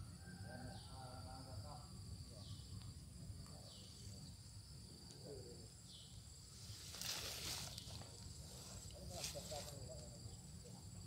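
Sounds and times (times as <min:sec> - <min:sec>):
insects droning: 0:00.0 - 0:11.0
rustling noise: 0:06.5 - 0:09.9.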